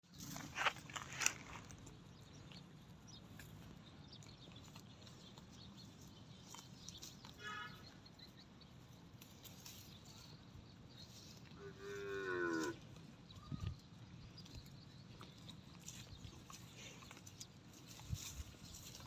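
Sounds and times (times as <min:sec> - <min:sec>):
cattle chewing grass: 0:00.1 - 0:07.4, 0:08.8 - 0:19.0
high-pitched animal call: 0:11.6 - 0:12.8.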